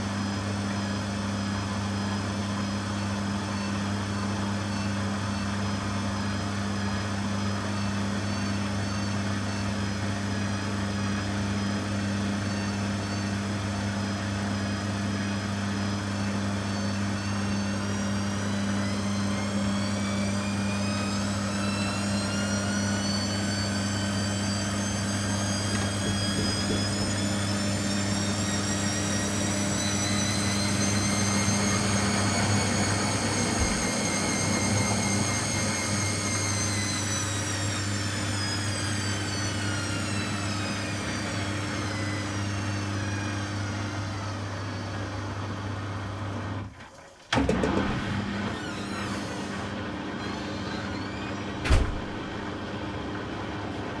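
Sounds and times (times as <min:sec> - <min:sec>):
washing machine motor whine: 0:00.0 - 0:54.0.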